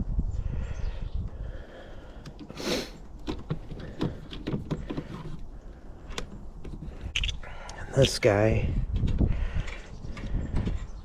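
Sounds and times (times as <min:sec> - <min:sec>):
low wind rumble: 0:00.0 - 0:11.0
small clicks and knocks: 0:03.2 - 0:05.4.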